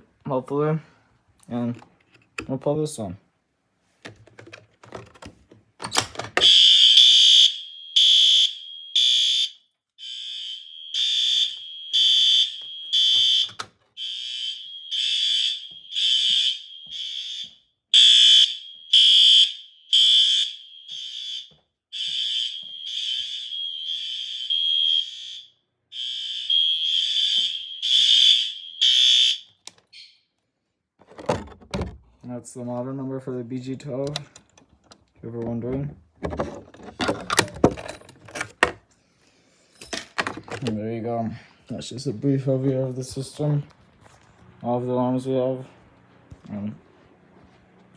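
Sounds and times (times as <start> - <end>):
fire alarm horns buzzing: 6.4 - 30.3.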